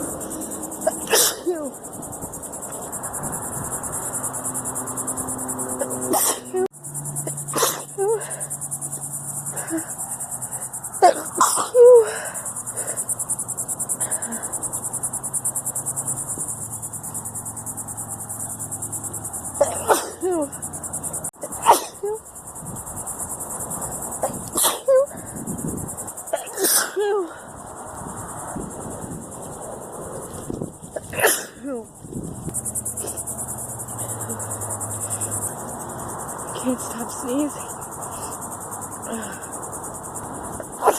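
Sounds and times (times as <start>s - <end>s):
woman sneezing: 0.8s - 1.7s, 5.8s - 6.7s, 7.4s - 8.4s, 11.0s - 12.2s, 19.6s - 20.5s, 21.4s - 22.2s, 24.2s - 25.2s, 26.4s - 27.3s, 31.0s - 31.8s.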